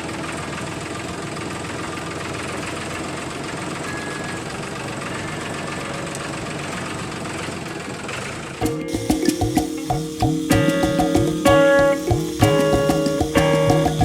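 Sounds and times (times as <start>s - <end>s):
music: 8.6s - 14.0s
small motor running: 9.4s - 14.0s.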